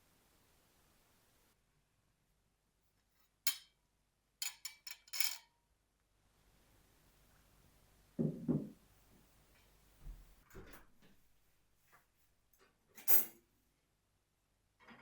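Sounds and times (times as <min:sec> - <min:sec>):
kitchenware clinking: 0:03.5 - 0:03.7, 0:04.4 - 0:05.4.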